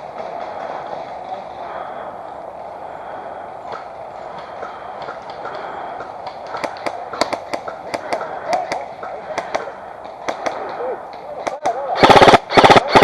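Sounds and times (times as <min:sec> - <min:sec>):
steady background noise: 0:00.0 - 0:13.0
airsoft guns firing: 0:06.3 - 0:13.0.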